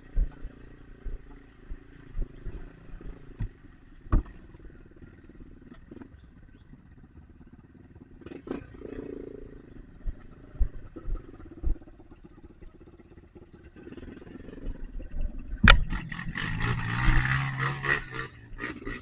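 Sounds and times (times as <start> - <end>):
motorcycle engine running: 0.0 - 19.0
sharp knocks and thumps: 2.2 - 4.7, 15.6 - 17.2.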